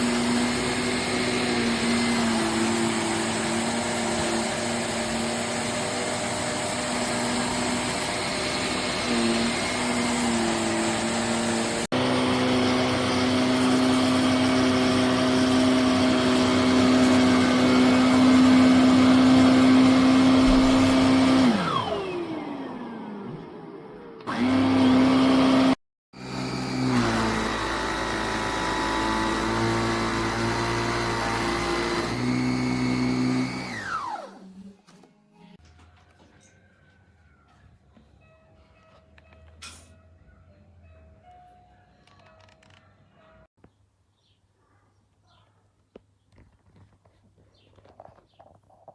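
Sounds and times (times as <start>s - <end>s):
vacuum motor humming: 0.0s - 34.6s.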